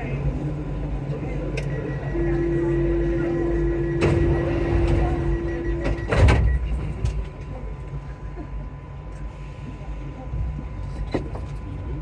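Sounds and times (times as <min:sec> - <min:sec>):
low train rumble: 0:00.0 - 0:12.0
train door warning tone: 0:01.1 - 0:07.3.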